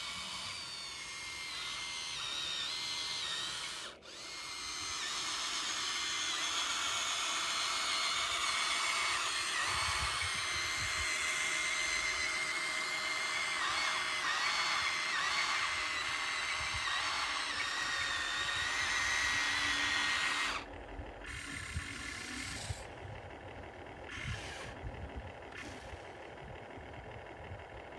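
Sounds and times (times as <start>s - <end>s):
small electric motor whining: 0.0s - 27.9s.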